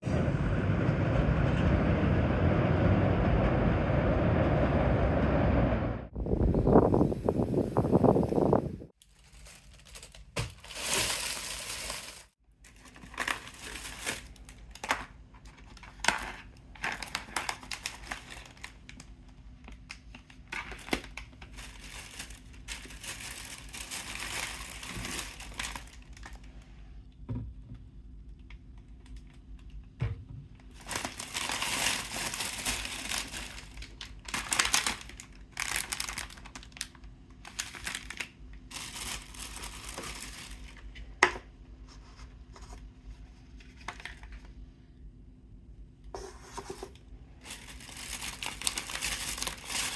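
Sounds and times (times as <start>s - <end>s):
plastic packaging crinkling: 8.9s - 26.6s, 30.7s - 40.9s, 47.4s - 49.9s.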